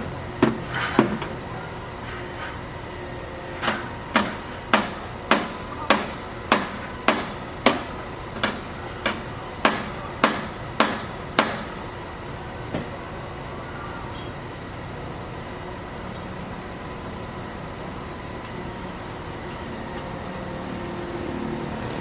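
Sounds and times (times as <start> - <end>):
hammer blows: 3.6 - 11.8.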